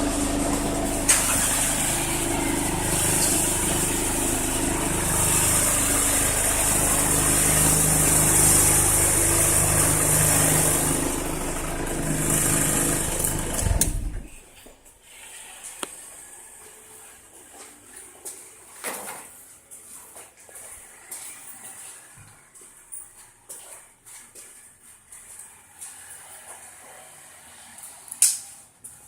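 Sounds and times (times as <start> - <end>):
car engine idling roughly: 0.0 - 14.3.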